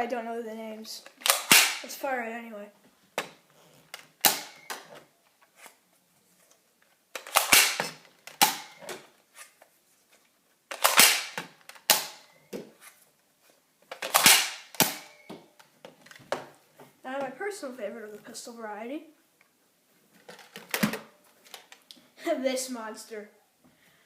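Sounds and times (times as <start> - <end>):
toy pistol shots snapping: 1.2 - 1.9, 4.2 - 4.8, 7.2 - 8.9, 10.7 - 12.2, 14.0 - 15.2.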